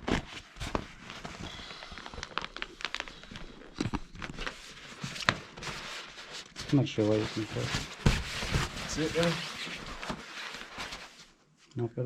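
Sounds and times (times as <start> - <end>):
person blowing breaths: 1.3 - 2.4
fabric rustling: 4.2 - 11.4.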